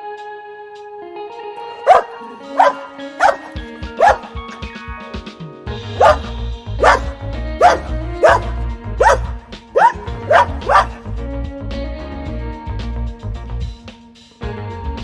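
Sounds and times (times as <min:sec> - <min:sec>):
background music: 0:00.0 - 0:15.0
dog barking sharply: 0:01.8 - 0:04.7, 0:06.0 - 0:11.1.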